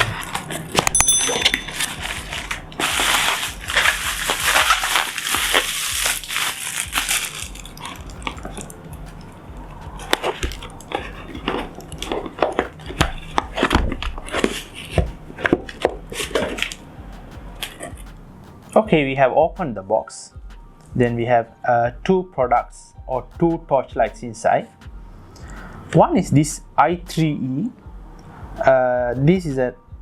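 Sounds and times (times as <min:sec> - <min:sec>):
packaging tearing and crinkling: 0:01.7 - 0:08.8, 0:10.0 - 0:16.8.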